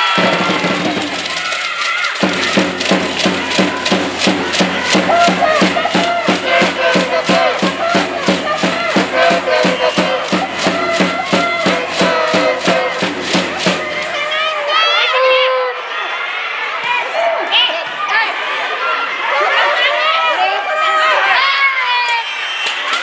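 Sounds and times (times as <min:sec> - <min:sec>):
rhythmic beats or claps: 0:00.0 - 0:14.5
crowd chanting and singing: 0:00.0 - 0:15.4.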